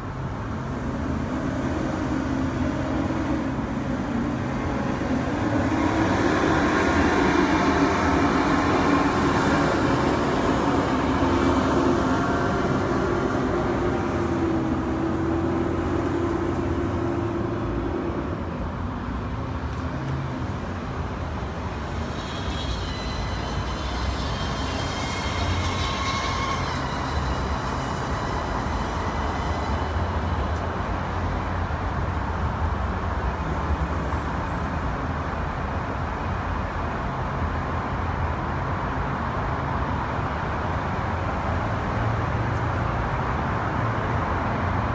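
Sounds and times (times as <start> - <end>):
road traffic rumble: 0.0 - 44.9
high-pitched whine: 3.0 - 18.2, 19.7 - 32.2.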